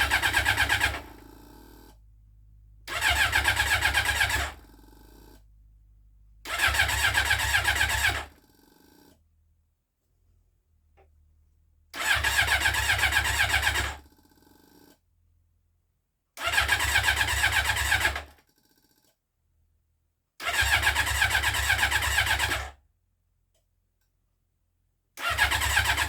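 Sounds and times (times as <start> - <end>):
motorcycle electric starter cranking: 0.0 - 2.0, 2.9 - 5.4, 6.5 - 9.1, 12.0 - 14.9, 16.4 - 18.7, 20.4 - 22.6, 25.2 - 26.0.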